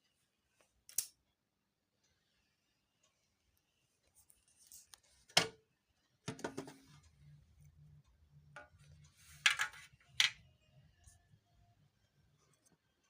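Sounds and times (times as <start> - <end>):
small parts and tools clicking: 0.6 - 1.4.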